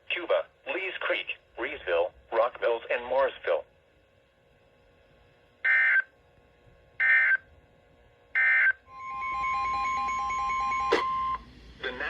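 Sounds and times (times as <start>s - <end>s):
pulsing beep: 8.4s - 11.4s
steady warning alert tone: 8.4s - 11.4s.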